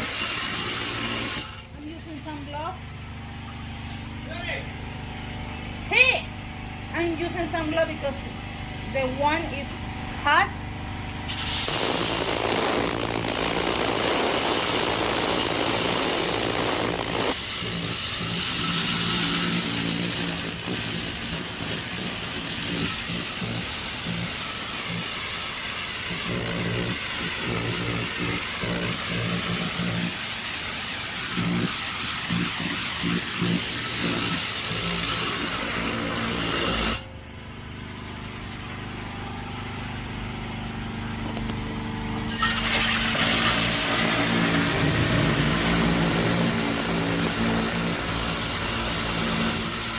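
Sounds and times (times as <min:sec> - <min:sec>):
pressure washer engine drone: 0:00.0 - 0:49.9
high-pressure water spray hiss: 0:10.8 - 0:37.0, 0:37.9 - 0:49.9.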